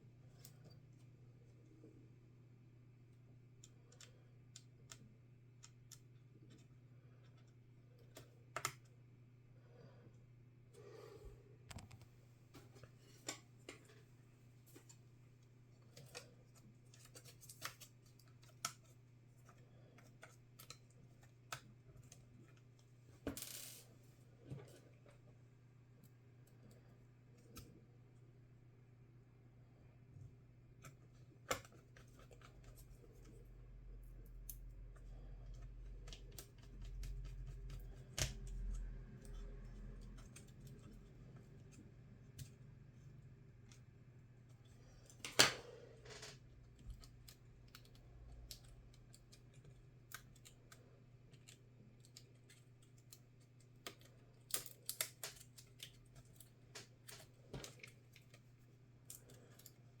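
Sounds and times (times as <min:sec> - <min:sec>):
clicks and taps on laptop: 0:11.7 - 0:12.1.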